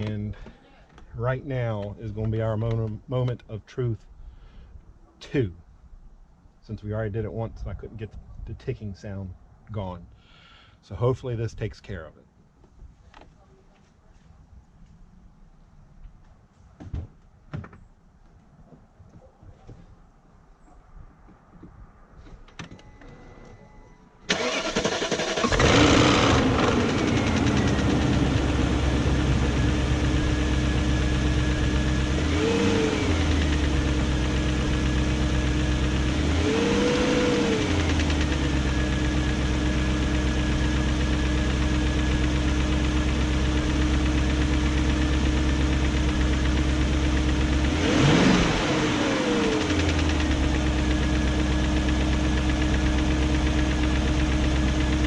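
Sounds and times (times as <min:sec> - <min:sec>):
car engine idling and revving: 0:00.0 - 0:00.3, 0:24.3 - 0:55.0
car engine cranking and starting: 0:00.0 - 0:00.5, 0:24.3 - 0:55.0.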